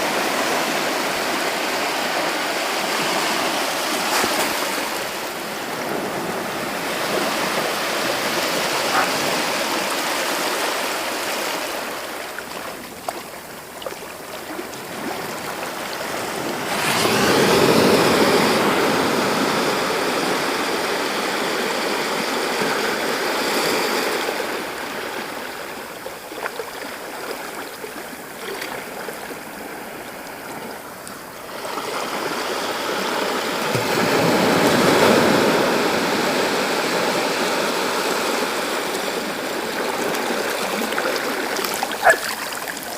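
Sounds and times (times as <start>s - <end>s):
sea waves breaking on beach: 0.0s - 42.9s.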